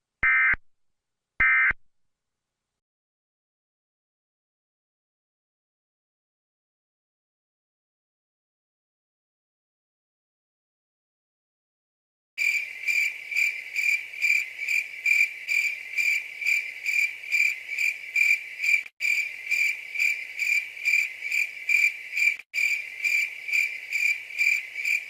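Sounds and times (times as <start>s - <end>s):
crickets chirping: 12.4s - 25.0s.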